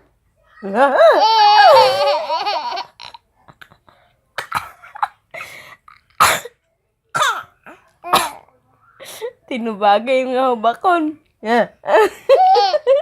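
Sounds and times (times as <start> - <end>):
child coughing: 6.2 - 6.6, 7.2 - 8.5.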